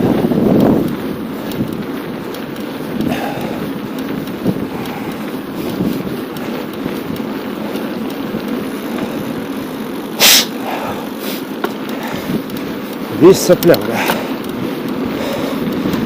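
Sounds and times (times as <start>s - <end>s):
bicycle rolling rumble: 0.0s - 16.0s
wind: 0.0s - 16.0s
short loud hiss: 10.2s - 10.5s.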